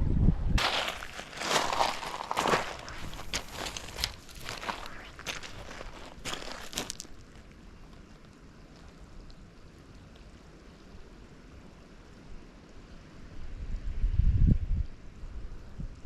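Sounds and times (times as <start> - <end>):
wind buffeting microphone: 0.0 - 7.0, 13.4 - 16.0.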